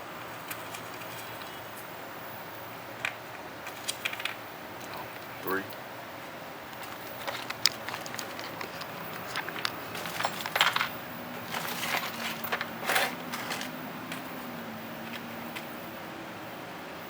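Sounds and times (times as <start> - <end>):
light metal clicks: 6.7 - 14.4
metal washers scraping and rattling: 6.7 - 14.4.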